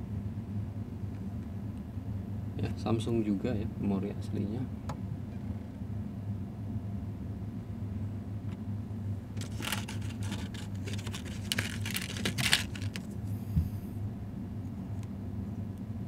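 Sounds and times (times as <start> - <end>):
steady low hum: 0.0 - 16.0
plastic crinkling and clicks: 9.4 - 13.1.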